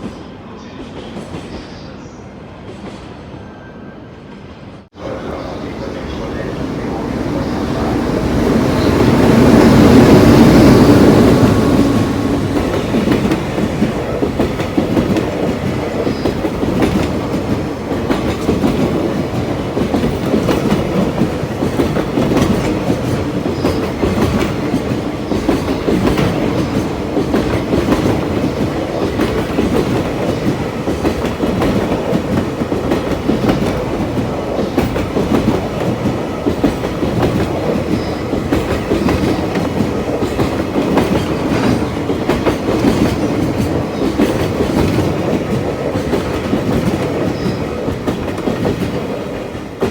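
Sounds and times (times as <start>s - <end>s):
freight train passing: 0.0s - 49.9s.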